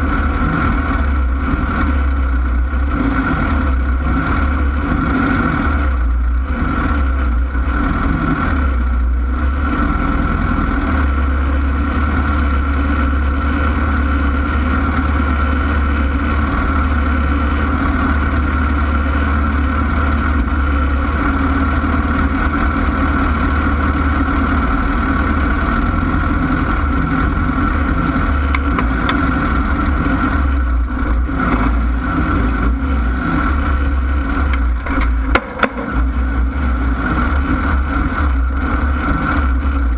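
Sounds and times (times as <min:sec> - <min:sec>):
race car engine droning: 0:00.0 - 0:39.9.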